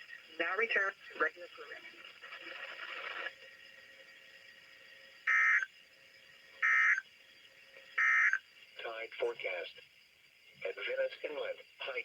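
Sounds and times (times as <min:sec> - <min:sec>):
radio hiss: 0:00.0 - 0:03.4, 0:08.0 - 0:09.8, 0:10.6 - 0:12.0
harsh digital data squawks: 0:05.3 - 0:05.7, 0:06.6 - 0:07.1, 0:08.0 - 0:08.4.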